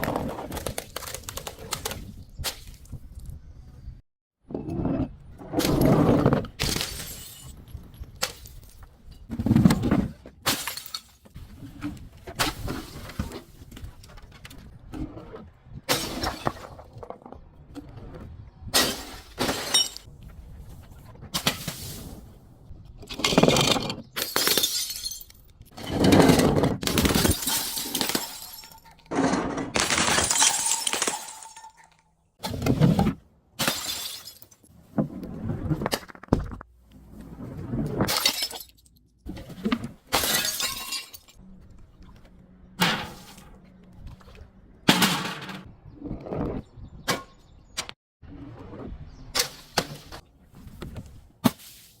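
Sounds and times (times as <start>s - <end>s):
glass bottles breaking: 6.6s - 7.6s, 10.5s - 11.2s, 18.8s - 20.1s, 23.6s - 25.5s, 26.9s - 29.0s, 29.7s - 32.0s, 33.6s - 34.7s, 38.0s - 38.9s, 40.1s - 41.4s.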